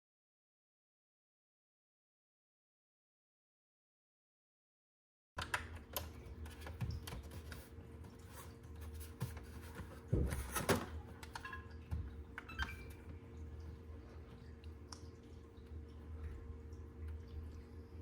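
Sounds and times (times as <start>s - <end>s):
low electrical hum: 5.4s - 18.0s.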